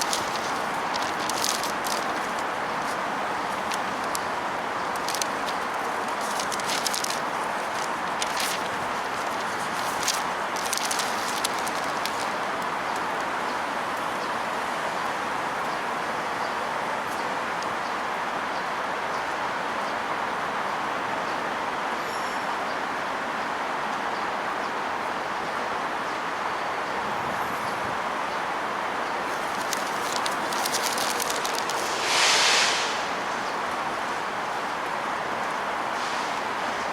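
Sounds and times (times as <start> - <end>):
strong wind blowing: 0.0 - 13.3, 29.2 - 35.0
faint clicks: 29.3 - 32.0.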